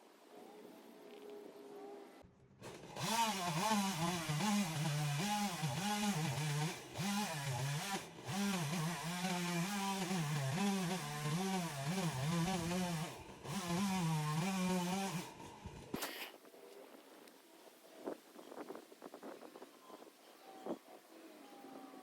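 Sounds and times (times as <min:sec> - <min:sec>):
chainsaw revving: 0:02.6 - 0:16.0.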